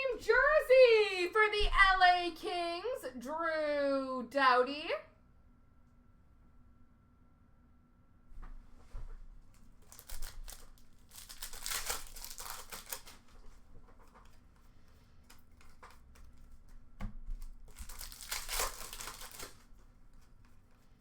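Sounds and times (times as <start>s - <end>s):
wrapper tearing and crinkling: 9.5s - 16.8s, 17.4s - 21.0s.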